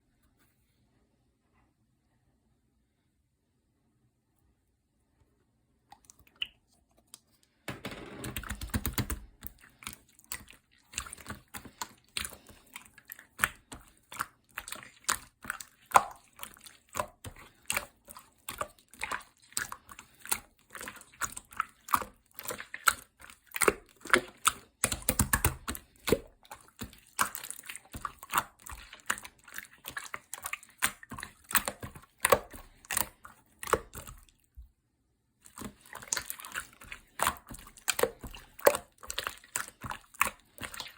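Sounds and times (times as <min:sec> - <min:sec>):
slime squishing and clicking: 0:08.2 - 0:34.3, 0:35.5 - 0:40.9.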